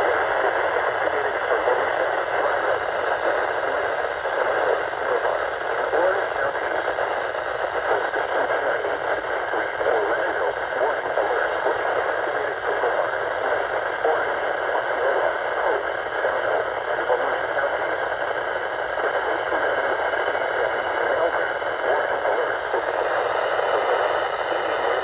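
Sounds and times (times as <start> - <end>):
radio static and hiss: 0.0 - 25.0.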